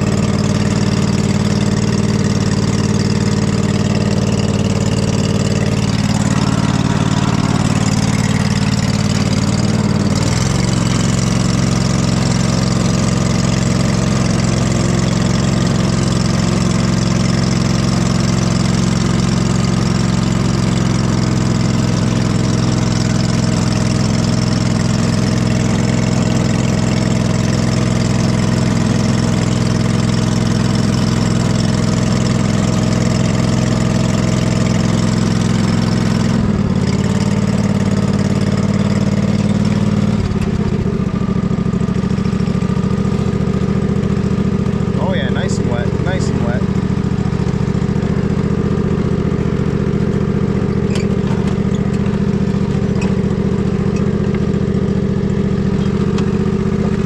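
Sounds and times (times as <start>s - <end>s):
riding lawn mower engine running: 0.0s - 57.0s.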